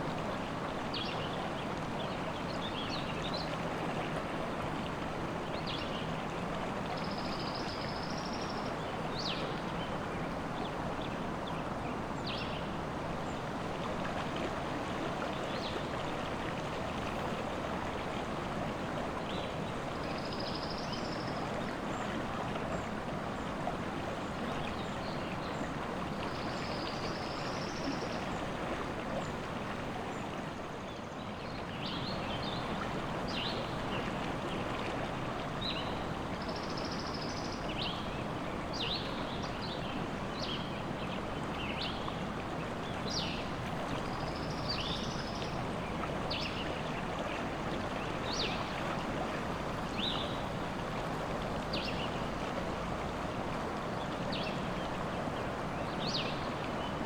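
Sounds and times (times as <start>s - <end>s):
stream rushing: 32.0s - 57.0s.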